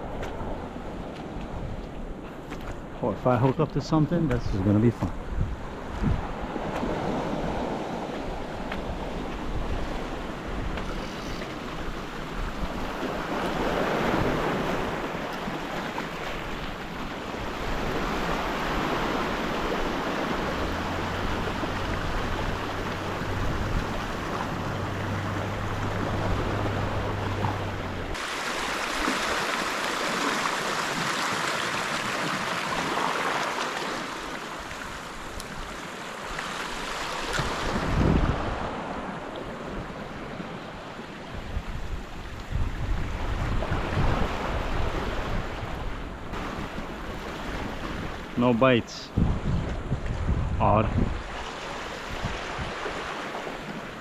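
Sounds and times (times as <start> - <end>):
ocean surf breaking on shore: 0.0 - 54.0
wind buffeting microphone: 4.1 - 28.2, 37.3 - 48.4, 49.0 - 54.0.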